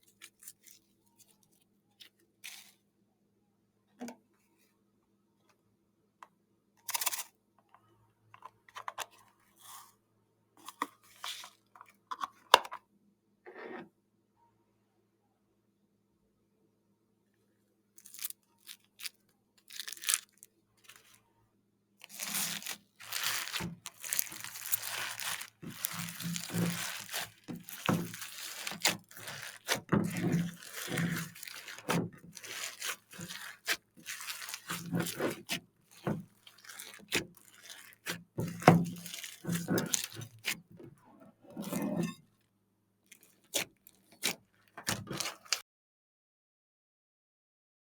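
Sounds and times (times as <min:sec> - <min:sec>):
slime with beads crunching: 0:18.0 - 0:21.1, 0:22.0 - 0:40.6, 0:43.1 - 0:45.6.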